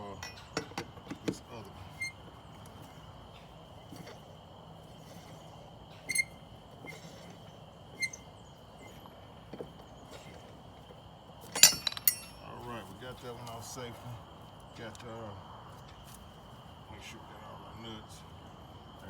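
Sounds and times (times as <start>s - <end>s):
faint metallic clinks: 0.0s - 4.3s, 4.9s - 13.8s
steady high hum: 0.0s - 19.0s.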